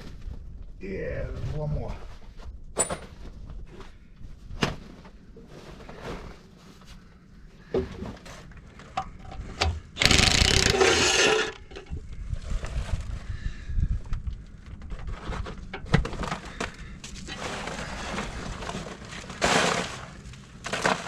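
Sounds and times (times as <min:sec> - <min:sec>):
power tool burst: 0:10.0 - 0:11.6
tool clicking on metal: 0:10.0 - 0:11.6.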